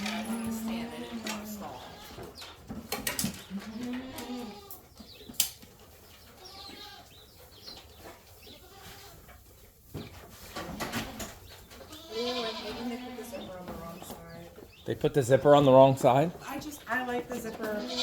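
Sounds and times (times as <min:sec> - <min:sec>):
birds chirping faintly: 0:00.0 - 0:18.0
goats bleating: 0:00.1 - 0:02.3, 0:03.5 - 0:04.8, 0:06.4 - 0:07.1, 0:08.5 - 0:09.2, 0:11.9 - 0:13.5, 0:17.6 - 0:18.0.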